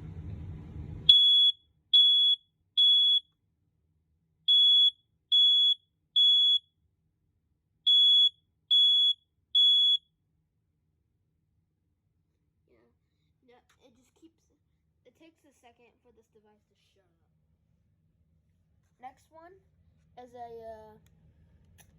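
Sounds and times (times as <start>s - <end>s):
smoke alarm beeping: 1.1s - 3.2s, 4.5s - 6.6s, 7.9s - 10.0s.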